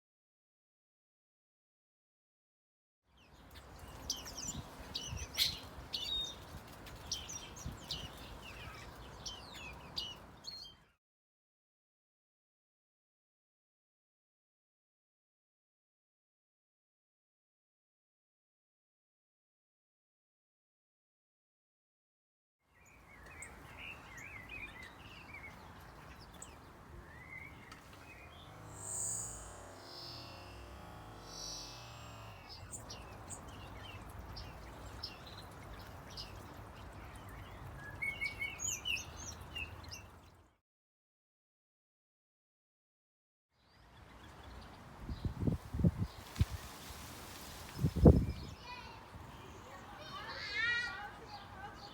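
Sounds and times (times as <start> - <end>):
small songbirds twittering: 3.1 - 11.0, 22.7 - 40.6, 43.6 - 51.9
bird chirping and trilling: 3.7 - 6.4, 27.1 - 40.1.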